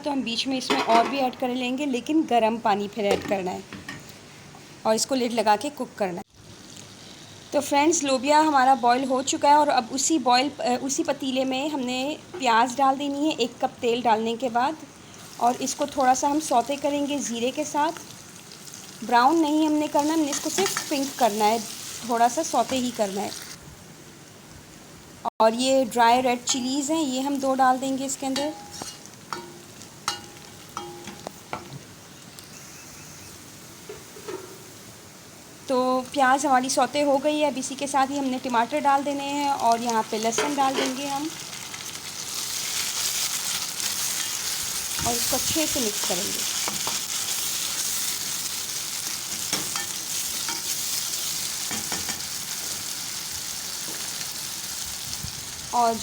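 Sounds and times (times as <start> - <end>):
onions sizzling in oil: 3.8 - 24.5, 25.2 - 56.0
spoon clinking against pot: 28.5 - 31.3.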